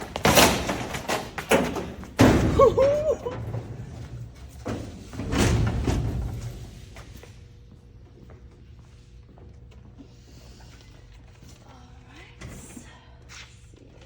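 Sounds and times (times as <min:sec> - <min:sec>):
bangs and thumps: 0:00.0 - 0:07.0.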